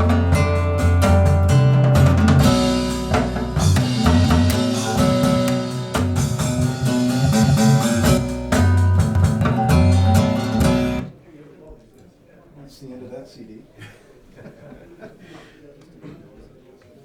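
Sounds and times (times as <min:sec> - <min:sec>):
band music over loudspeakers: 0:00.0 - 0:11.1.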